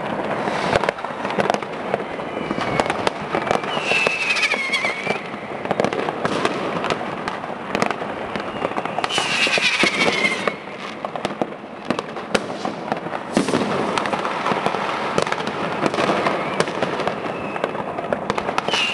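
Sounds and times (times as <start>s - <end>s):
firecrackers banging: 0.0s - 18.9s
whistling firework: 0.0s - 18.9s.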